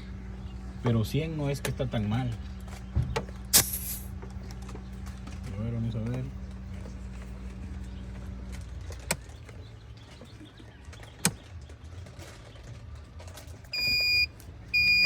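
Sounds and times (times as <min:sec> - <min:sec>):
high electronic beeps: 0:13.8 - 0:15.0.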